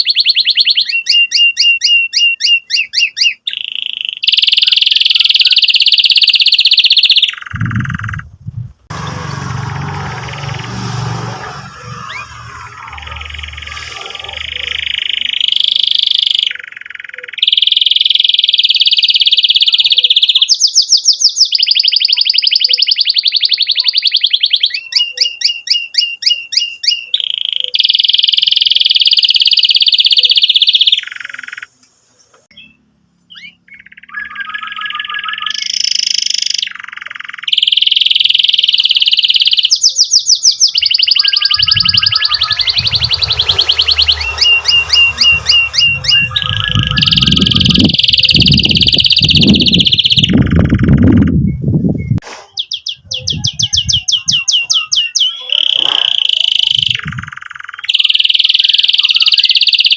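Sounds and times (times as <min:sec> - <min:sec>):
canary singing trills: 0:00.0 - 0:59.9
low rumbling noise: 0:07.5 - 0:15.5, 0:40.7 - 0:52.2.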